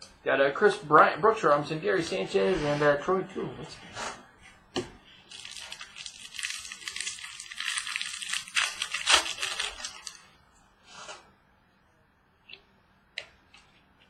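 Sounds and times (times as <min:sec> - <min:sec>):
card packaging rustling: 0:05.3 - 0:10.3.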